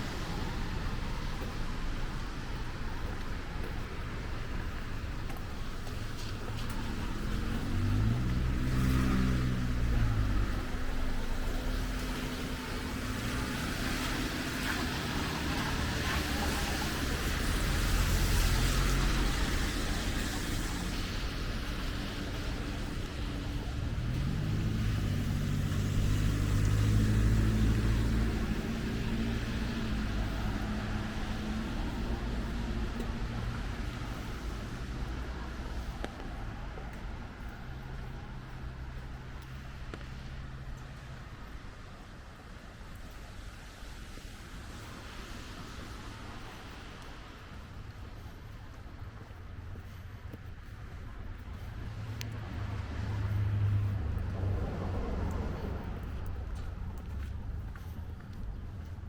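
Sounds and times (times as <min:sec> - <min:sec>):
rain hissing: 0:00.0 - 0:36.4
vehicle passing on wet road: 0:00.0 - 0:59.0.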